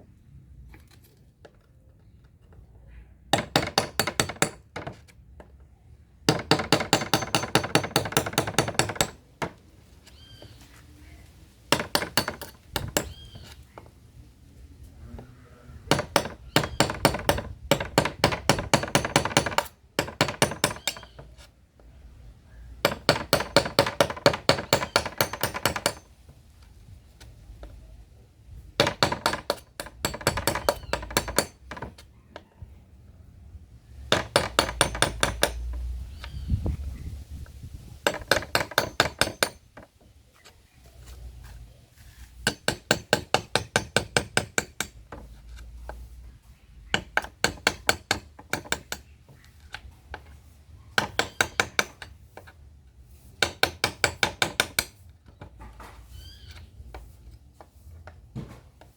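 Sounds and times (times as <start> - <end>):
hammer striking iron tool: 3.3 - 4.6, 6.3 - 9.2, 11.7 - 13.2, 15.9 - 21.2, 22.8 - 26.1, 28.8 - 31.9, 34.1 - 35.8, 38.0 - 39.6, 42.4 - 45.0.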